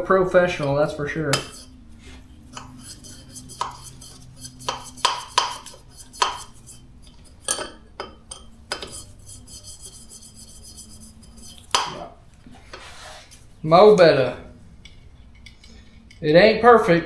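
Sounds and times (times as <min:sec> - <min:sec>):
rapid light metal rattle: 0:00.4 - 0:14.2
metal valve parts clinking: 0:00.5 - 0:01.8, 0:02.5 - 0:14.2.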